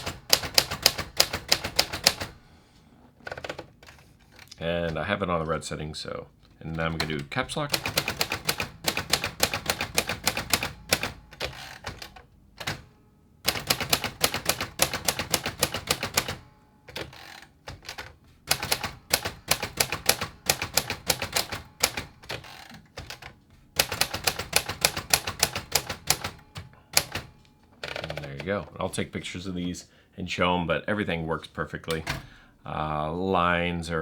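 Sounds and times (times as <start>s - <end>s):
typewriter keys striking: 0.0s - 2.4s, 6.7s - 28.7s.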